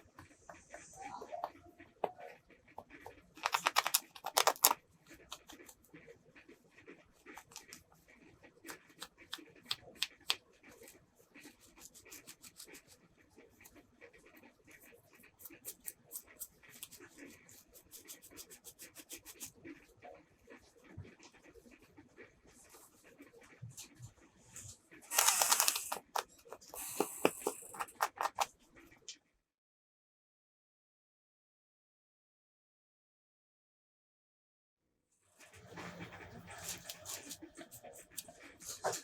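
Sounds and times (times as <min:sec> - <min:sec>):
plastic toy pieces clicking: 0:03.4 - 0:05.5, 0:25.1 - 0:28.5.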